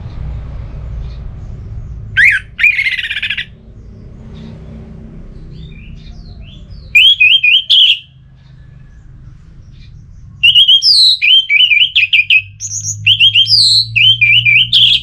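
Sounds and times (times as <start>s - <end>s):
thrush singing: 2.2s - 3.6s, 5.6s - 8.1s, 10.4s - 15.0s.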